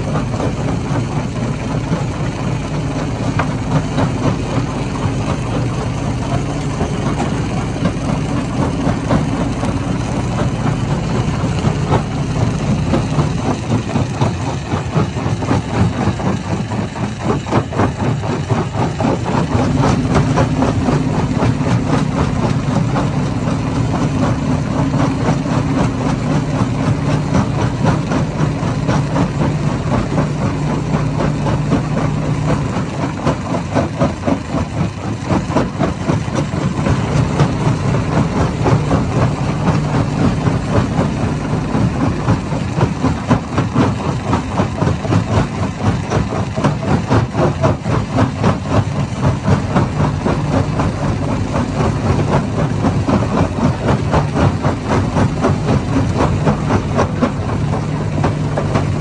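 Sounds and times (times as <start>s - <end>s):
heavy machine drone: 0.0s - 59.0s.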